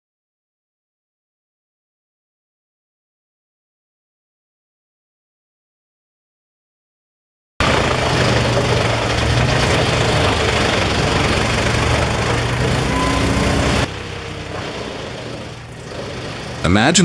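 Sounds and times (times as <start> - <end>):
wood chipper running: 7.6 - 17.0.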